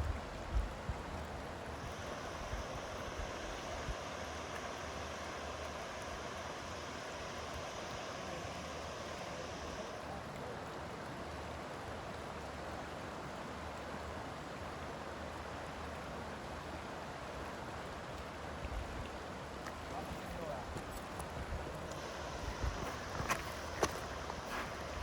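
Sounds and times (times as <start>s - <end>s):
river water rushing: 0.1s - 25.0s
high hiss: 1.6s - 10.5s, 19.9s - 25.0s.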